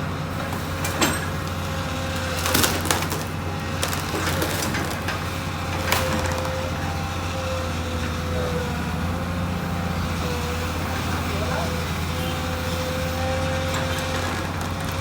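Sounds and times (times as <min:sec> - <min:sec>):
excavator diesel engine running: 0:00.0 - 0:15.0
wood cracking and splintering: 0:00.4 - 0:07.1, 0:13.4 - 0:15.0.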